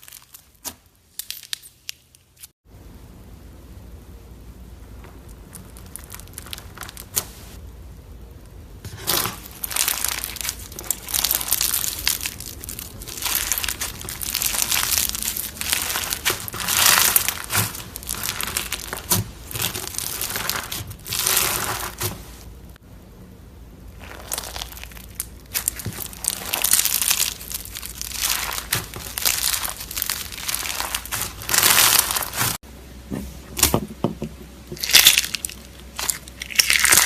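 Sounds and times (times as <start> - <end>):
crunchy slime squeezed by hand: 8.9 - 22.2, 23.9 - 32.6, 34.8 - 37.0.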